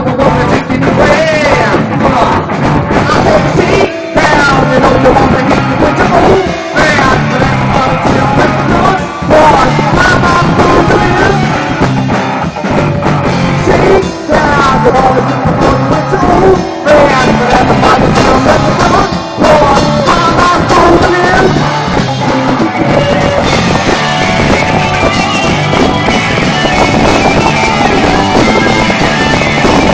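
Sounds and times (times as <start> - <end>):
person singing: 0.0 - 29.9
rock band playing live: 0.0 - 29.9.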